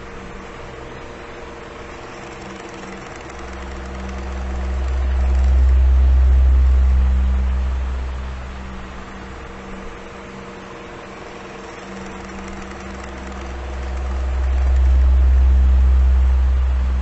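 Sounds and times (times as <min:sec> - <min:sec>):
electric fan humming: 0:00.0 - 0:17.0
low rumble of air: 0:04.7 - 0:10.2, 0:13.6 - 0:17.0.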